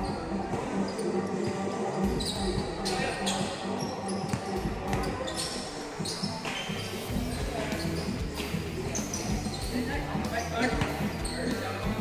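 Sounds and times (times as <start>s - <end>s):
shoe squeaks: 0.0s - 11.8s
players' voices: 0.0s - 12.0s
basketball bouncing on court: 4.3s - 5.4s.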